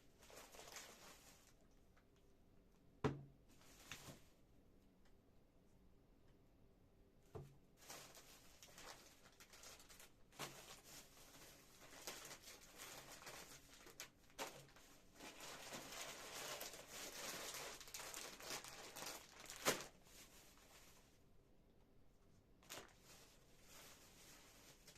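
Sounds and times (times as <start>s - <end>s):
rustling and crinkling: 0.0s - 2.3s, 3.4s - 4.5s, 7.3s - 21.2s, 22.6s - 24.9s.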